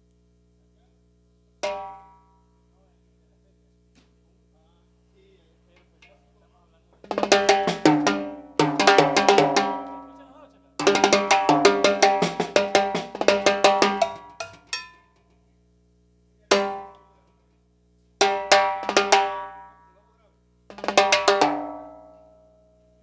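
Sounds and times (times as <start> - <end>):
drums struck in fast runs: 7.0 - 14.8, 16.5 - 17.0, 18.2 - 19.6, 20.7 - 22.0.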